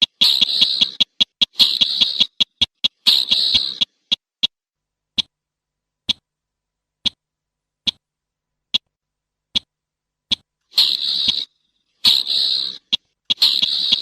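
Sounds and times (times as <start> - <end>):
bird calling sharp notes: 0.0 - 4.5, 10.3 - 14.0.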